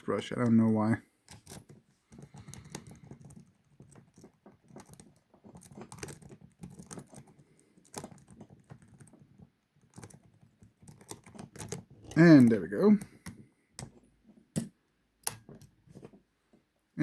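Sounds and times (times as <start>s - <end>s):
lock pick clicking in padlock: 1.3s - 9.1s, 9.8s - 14.0s, 14.6s - 15.7s.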